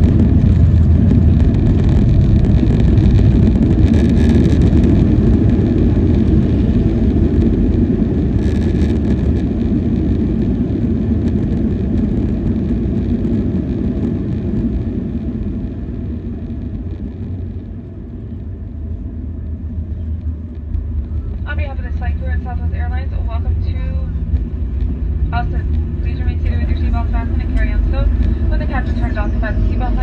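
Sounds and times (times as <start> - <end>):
jet engine and rolling noise: 0.0 - 30.0.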